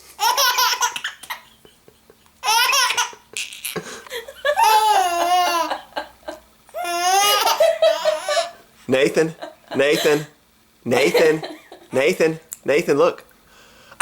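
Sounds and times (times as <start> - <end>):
baby laughing: 0.2 - 1.8, 2.4 - 8.6.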